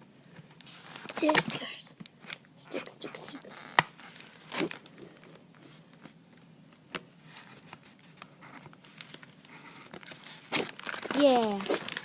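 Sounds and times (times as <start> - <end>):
plastic items clicking and rustling: 7.4 - 12.0.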